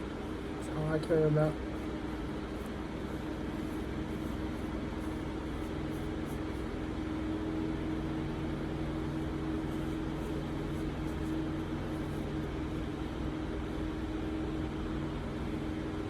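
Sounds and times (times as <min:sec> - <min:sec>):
steady mechanical hum: 0:00.0 - 0:16.0.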